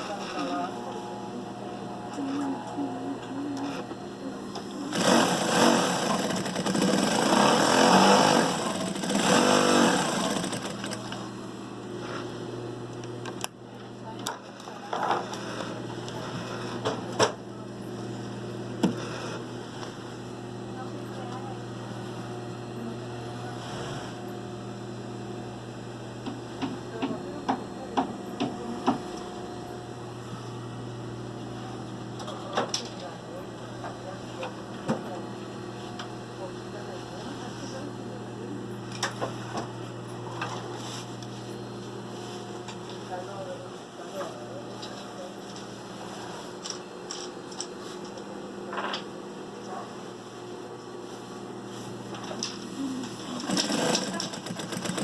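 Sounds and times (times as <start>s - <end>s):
motor hum: 0.0s - 48.3s
sewing machine running: 4.9s - 11.3s, 53.1s - 55.0s.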